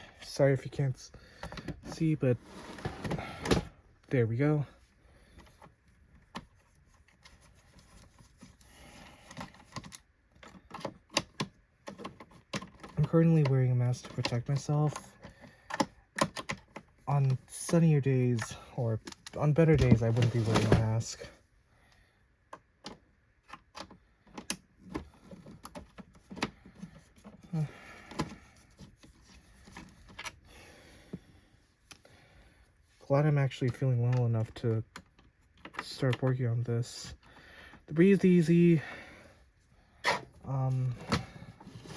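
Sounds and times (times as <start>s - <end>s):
plastic parts clicking and knocking: 9.2s - 21.0s, 22.4s - 27.4s, 33.7s - 36.4s
plastic parts clicking and tapping: 9.3s - 17.8s.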